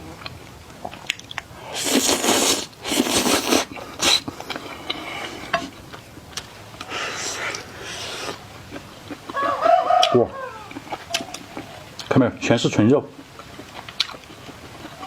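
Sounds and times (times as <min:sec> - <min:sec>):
noisy eating mouthfuls: 0:00.2 - 0:12.1, 0:13.2 - 0:15.0
chewing clicks: 0:13.2 - 0:15.0.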